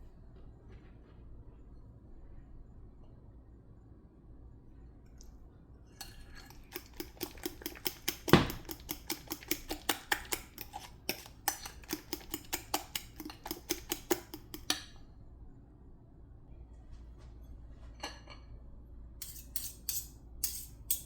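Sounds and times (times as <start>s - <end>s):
utensil clicking against a dish: 6.0s - 15.0s.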